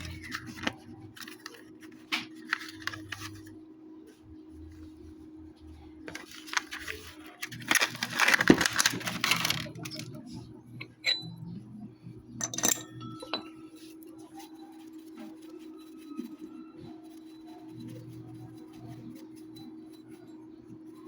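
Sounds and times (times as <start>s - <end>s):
small metal parts clattering: 6.1s - 10.2s, 12.4s - 13.4s.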